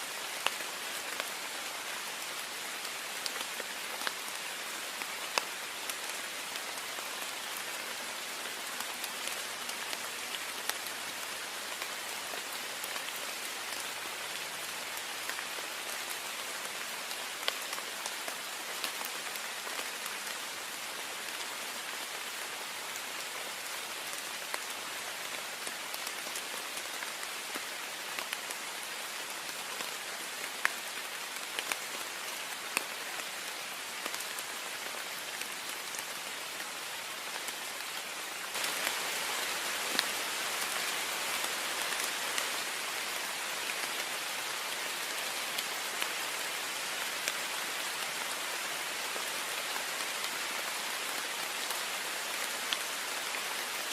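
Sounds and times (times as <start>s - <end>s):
heavy rain hissing: 37.8s - 48.2s.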